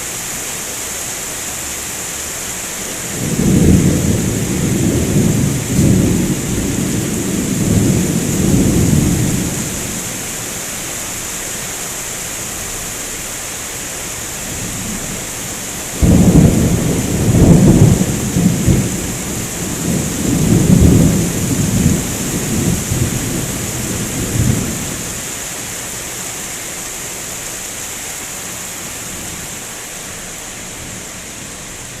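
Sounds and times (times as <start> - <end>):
rain hissing: 0.0 - 32.0
thunder rumbling: 3.0 - 10.2, 14.5 - 25.3.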